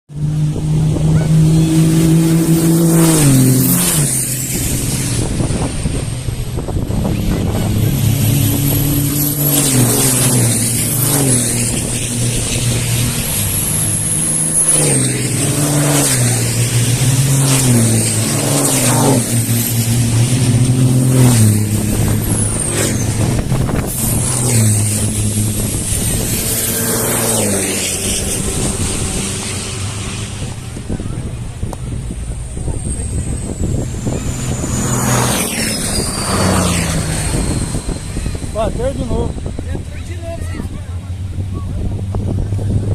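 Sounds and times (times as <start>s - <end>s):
truck diesel engine passing: 0.1s - 42.9s
high whistle sweeping down: 32.7s - 40.0s.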